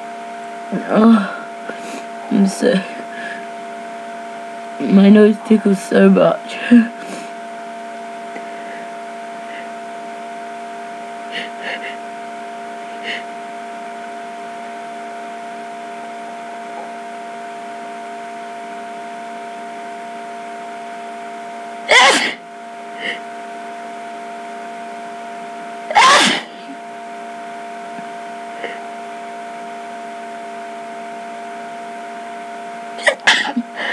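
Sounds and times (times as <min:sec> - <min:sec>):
steady electrical hum: 0:00.0 - 0:33.9
loud sneeze: 0:21.9 - 0:22.4, 0:25.9 - 0:26.6.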